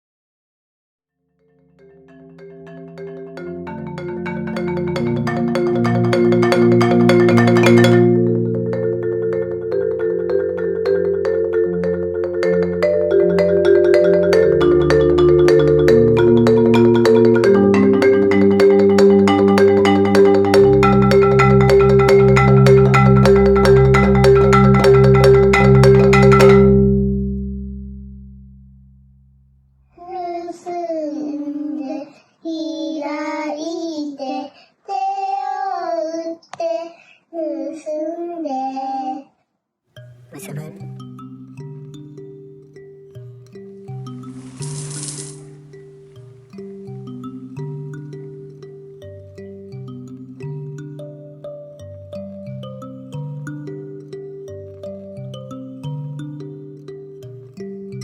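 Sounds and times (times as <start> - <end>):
instrumental music: 1.4 - 30.0, 40.0 - 58.0
ticking beat: 1.8 - 29.8, 40.0 - 58.0.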